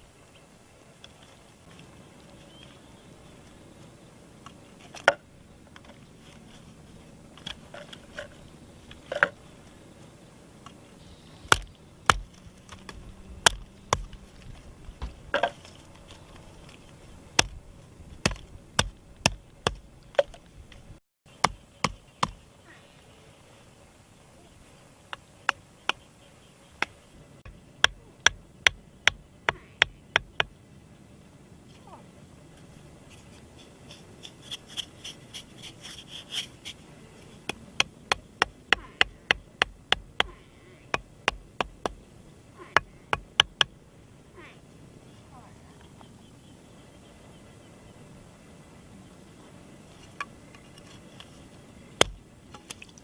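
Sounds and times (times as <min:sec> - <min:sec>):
sharp chopping knocks: 0:11.5 - 0:14.2, 0:18.2 - 0:20.3.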